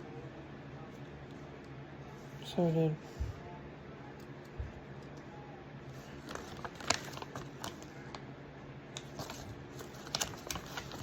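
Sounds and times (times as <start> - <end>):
faint steady hum: 0.0 - 11.0
plastic packaging rustling and clicking: 6.0 - 8.3, 8.9 - 11.0.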